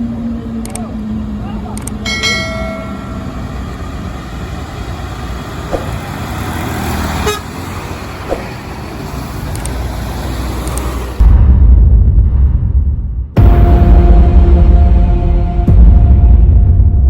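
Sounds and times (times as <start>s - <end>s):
road traffic: 0.0s - 11.4s
loud low rumble: 11.2s - 17.0s.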